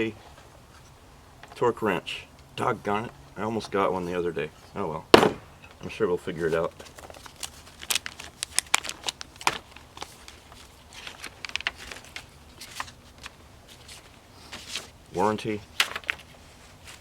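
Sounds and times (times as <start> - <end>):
packaging and papers rustling: 5.7 - 17.0.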